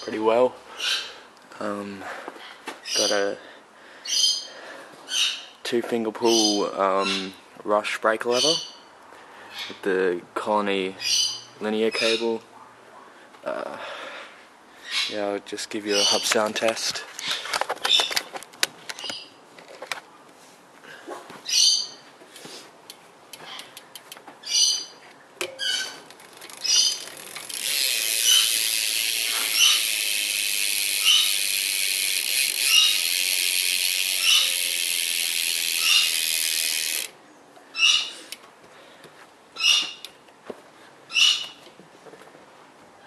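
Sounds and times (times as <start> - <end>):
bike hub ratcheting buzz: 25.4 - 37.2.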